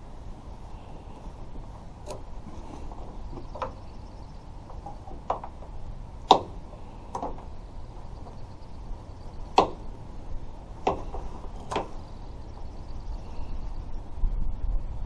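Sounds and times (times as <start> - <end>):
clamp lock clicks and knocks: 4.7 - 8.4, 9.5 - 9.9, 10.8 - 12.0.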